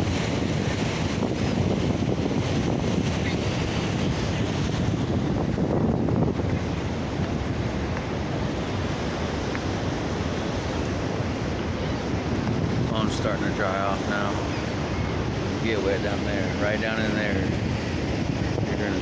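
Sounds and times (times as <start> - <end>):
waterfall roaring: 0.0 - 19.0
wind buffeting microphone: 0.0 - 19.0.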